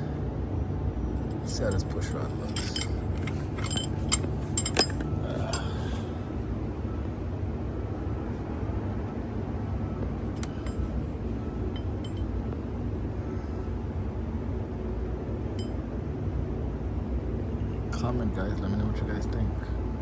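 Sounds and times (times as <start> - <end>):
light metallic clinks: 1.6 - 5.8, 10.3 - 12.4, 15.6 - 15.8
low hum: 1.6 - 16.1.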